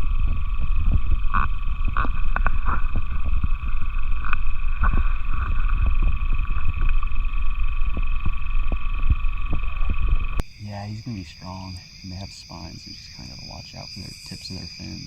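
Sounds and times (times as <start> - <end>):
loud low rumble: 0.0 - 10.4
frogs calling: 0.0 - 15.0.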